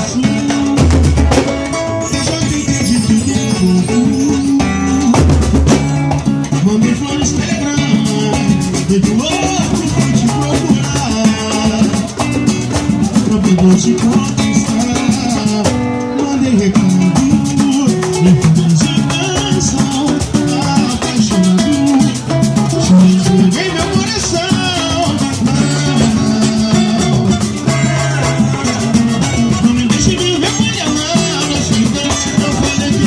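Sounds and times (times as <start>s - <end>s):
bass: 0.0s - 33.0s
guitar: 0.0s - 33.0s
shaker rattle beat: 0.1s - 15.8s, 16.7s - 33.0s.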